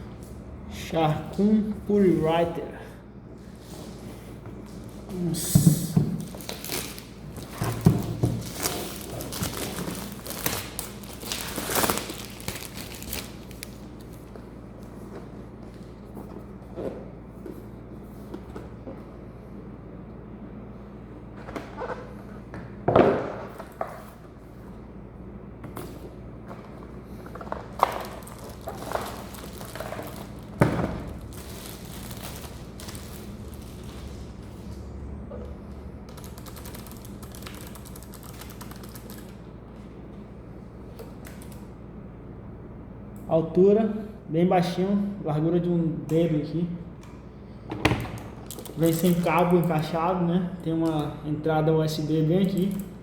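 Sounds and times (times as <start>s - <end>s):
packaging crinkling and rustling: 6.1s - 14.4s, 27.2s - 34.8s, 36.1s - 39.4s, 48.5s - 49.6s
box knocks and rustling: 7.4s - 8.6s.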